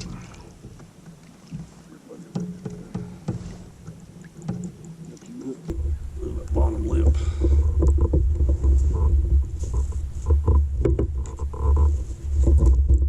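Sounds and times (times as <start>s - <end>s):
small water splashes: 0.0s - 8.0s
steady low rumble: 5.7s - 13.0s.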